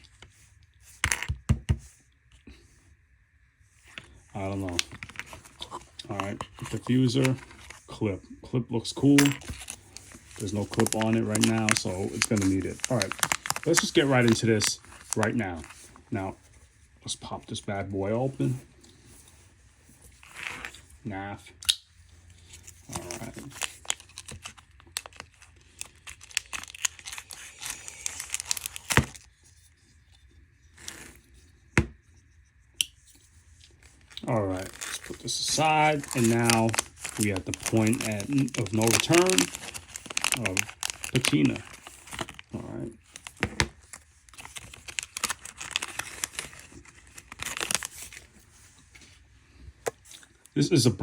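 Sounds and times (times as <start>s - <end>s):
packaging torn and crinkled: 4.4s - 7.9s, 9.0s - 16.3s, 22.4s - 29.7s, 33.6s - 48.7s.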